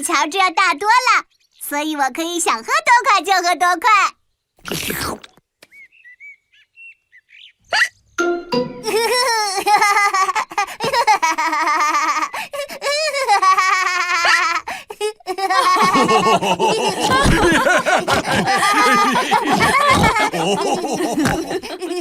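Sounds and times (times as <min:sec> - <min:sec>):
cartoon voices laughing: 0:08.8 - 0:22.0.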